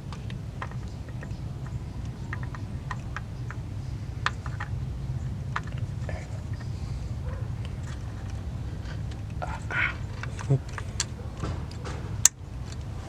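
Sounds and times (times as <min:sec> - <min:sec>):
metal parts and tools clicking: 0:00.0 - 0:13.0
steady low hum: 0:00.0 - 0:13.0.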